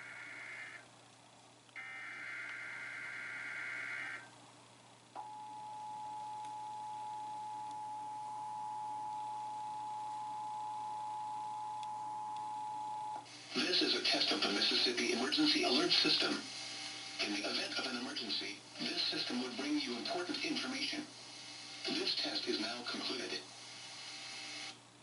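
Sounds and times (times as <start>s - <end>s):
data bursts: 1.8s - 4.3s.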